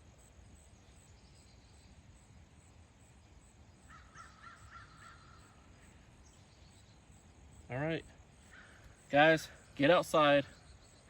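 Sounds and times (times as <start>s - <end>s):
faint bird calls: 3.7s - 11.0s.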